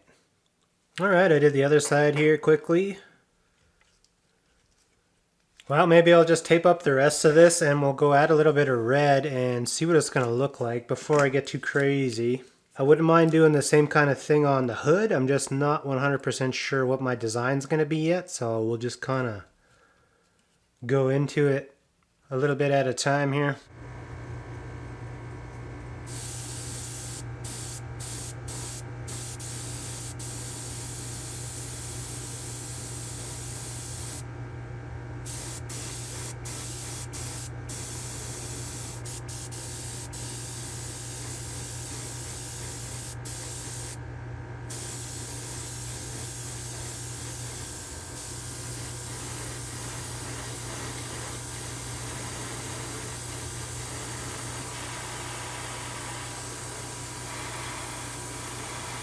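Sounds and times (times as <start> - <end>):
low hum: 23.7 - 32.1, 33.1 - 40.6
airbrush spraying hiss: 26.1 - 34.3, 35.3 - 44.0, 44.7 - 59.0.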